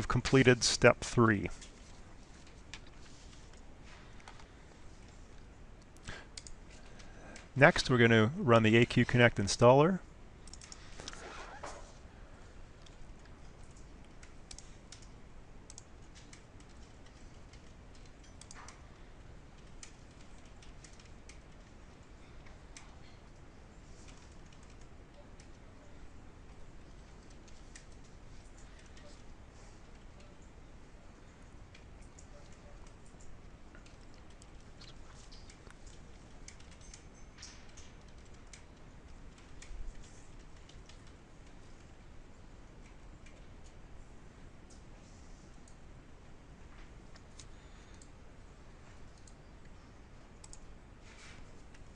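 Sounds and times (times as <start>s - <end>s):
computer keyboard keystrokes: 6.4s - 7.5s, 10.4s - 10.8s, 12.8s - 18.8s, 19.5s - 23.2s, 24.0s - 25.8s, 31.7s - 41.9s, 49.1s - 49.4s, 50.4s - 50.7s.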